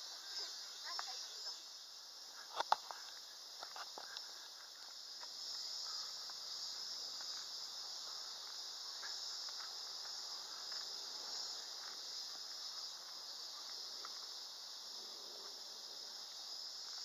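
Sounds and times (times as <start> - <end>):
high-pitched insect chorus: 0.0 - 17.0
faint ticks: 2.4 - 7.6.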